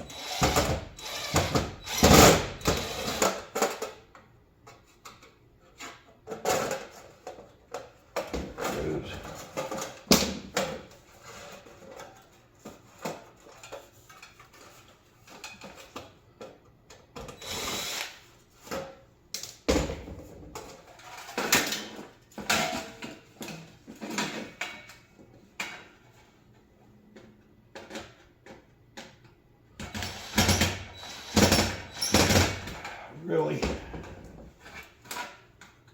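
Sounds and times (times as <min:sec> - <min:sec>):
power drill running in bursts: 0:00.0 - 0:03.3, 0:17.4 - 0:18.2, 0:29.9 - 0:32.6.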